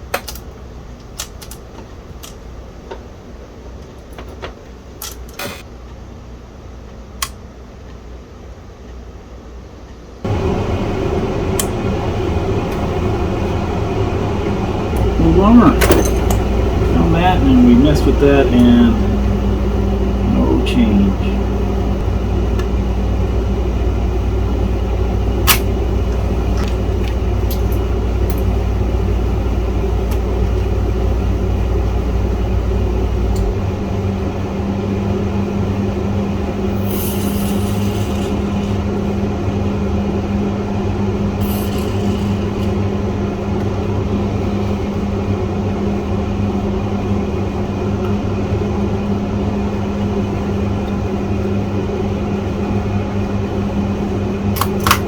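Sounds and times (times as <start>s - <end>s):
higher electrical hum: 0.0s - 55.0s
deep low rumble: 10.7s - 36.8s
short hissing bursts: 36.8s - 38.1s.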